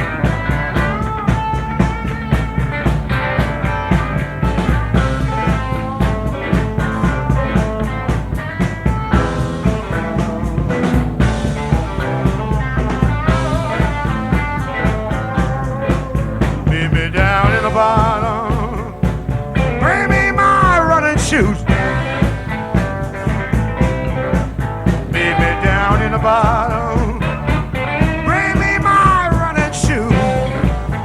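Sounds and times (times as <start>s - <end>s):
bass guitar: 0.0s - 31.0s
electric guitar: 0.0s - 31.0s
steady drum beat: 0.0s - 31.0s.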